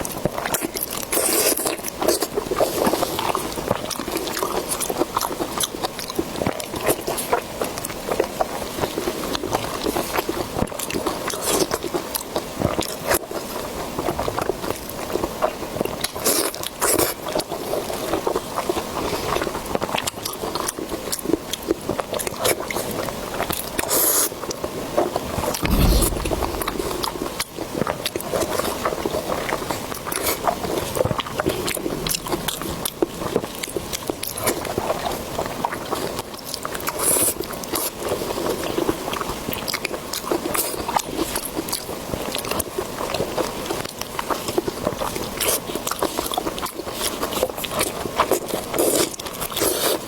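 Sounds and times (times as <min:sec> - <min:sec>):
low thump: 0:25.6 - 0:27.3.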